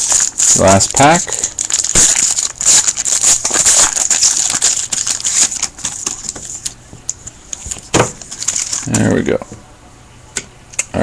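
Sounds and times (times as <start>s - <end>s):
wrapper tearing and crinkling: 0.0s - 6.8s, 7.5s - 8.9s.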